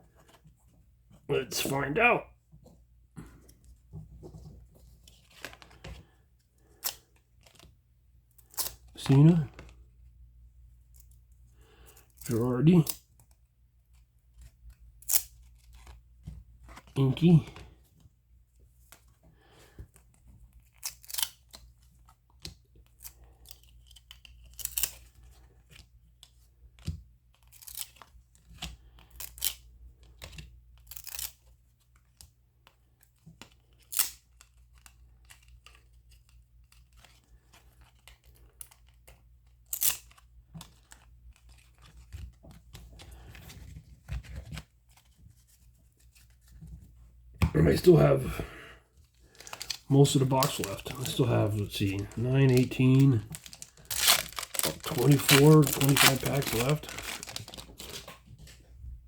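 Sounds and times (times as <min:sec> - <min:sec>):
wrappers rustling and tearing: 0:33.0 - 0:46.5, 0:49.0 - 0:58.6.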